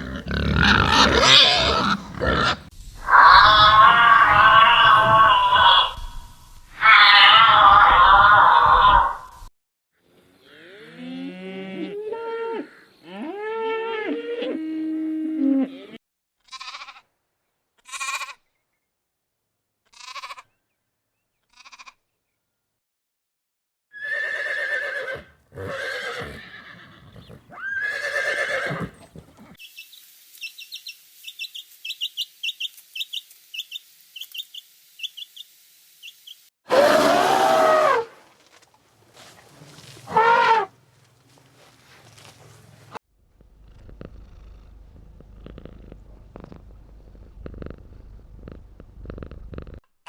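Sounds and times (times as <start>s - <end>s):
farm animal calls: 0.0s - 6.0s, 24.0s - 29.6s, 39.1s - 43.0s
rapid high chirping: 28.9s - 36.5s.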